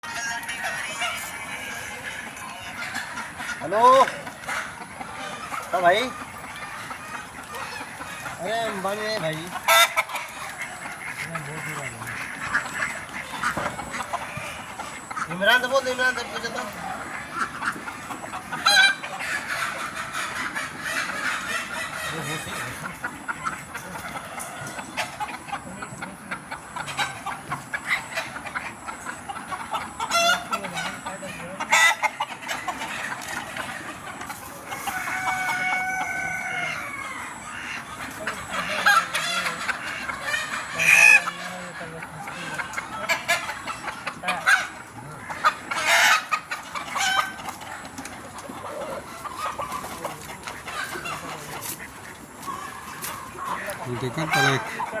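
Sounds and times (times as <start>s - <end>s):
chickens clucking: 0.0s - 55.0s
rooster crowing: 34.8s - 37.5s.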